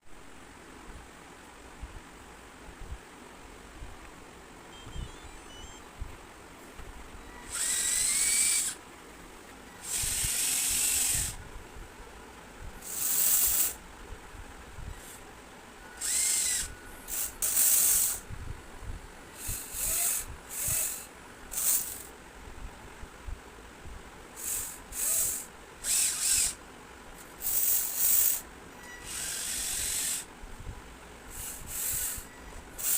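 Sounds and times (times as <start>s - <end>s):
small electric motors whining: 7.3s - 8.8s, 9.8s - 11.4s, 12.8s - 13.8s, 16.0s - 18.2s, 19.4s - 22.1s, 24.4s - 26.6s, 27.2s - 30.3s, 31.3s - 32.9s
hissing scraping bursts of excavator: 7.4s - 8.8s, 12.8s - 13.8s, 24.4s - 26.6s, 27.4s - 30.3s, 31.3s - 32.9s.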